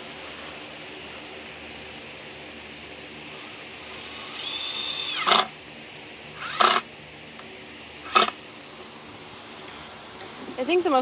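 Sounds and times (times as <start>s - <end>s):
power tool whining in bursts: 3.3s - 5.6s, 6.3s - 6.9s, 8.0s - 8.4s.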